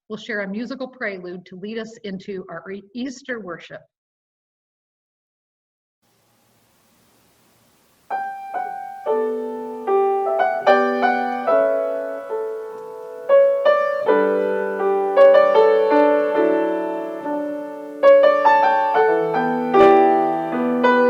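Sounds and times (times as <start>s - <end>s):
solo piano playing: 8.1s - 21.0s.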